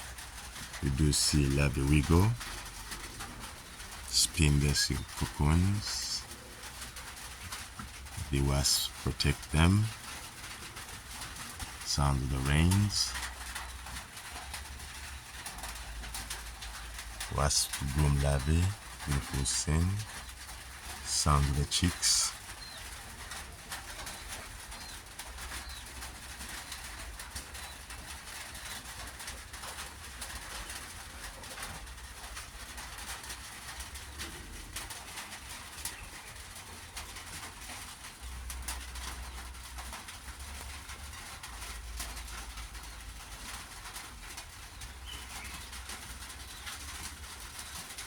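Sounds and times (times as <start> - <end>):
rain hissing: 0.0 - 22.8
birds chirping: 0.6 - 28.9, 44.6 - 48.0.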